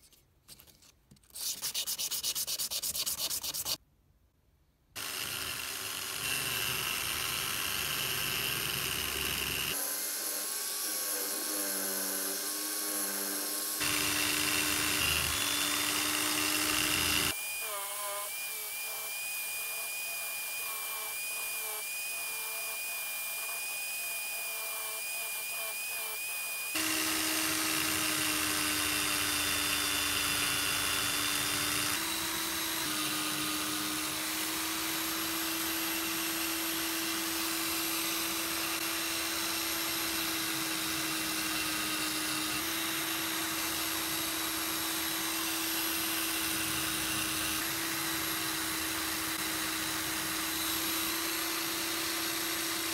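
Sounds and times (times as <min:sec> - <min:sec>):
high-speed rotary tool running: 0:05.0 - 0:52.9.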